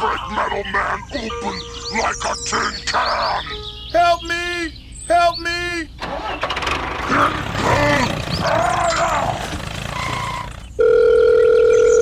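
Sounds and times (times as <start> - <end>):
voices crying out: 0.0 - 10.8.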